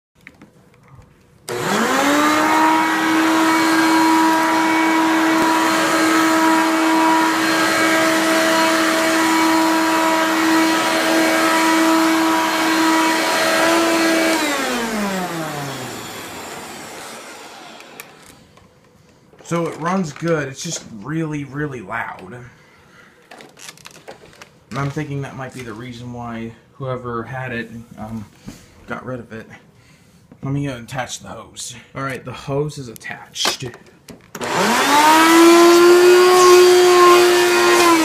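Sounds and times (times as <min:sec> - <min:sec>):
vacuum cleaner motor whining: 0:01.5 - 0:18.9, 0:34.4 - 0:38.0.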